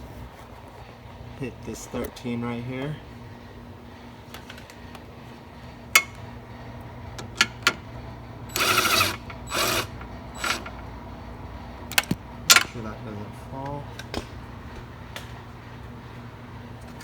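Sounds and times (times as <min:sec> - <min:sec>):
ratchet wrench clicking: 0:08.5 - 0:10.8.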